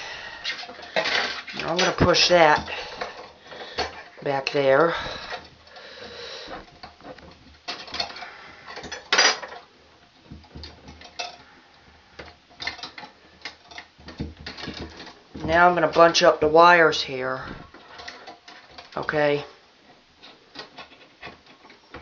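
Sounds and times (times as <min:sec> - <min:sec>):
wires clicking in metal box: 0:00.4 - 0:05.8, 0:12.2 - 0:17.1.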